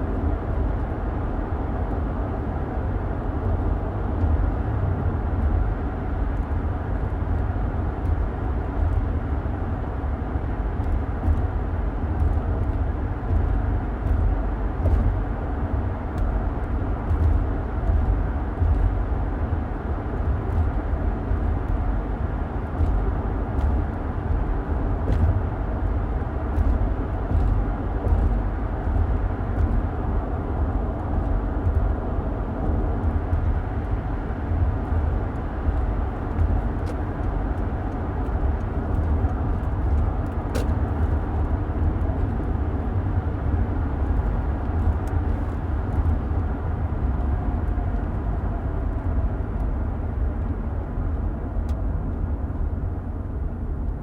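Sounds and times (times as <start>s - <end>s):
car road and engine rumble: 0.0s - 54.0s.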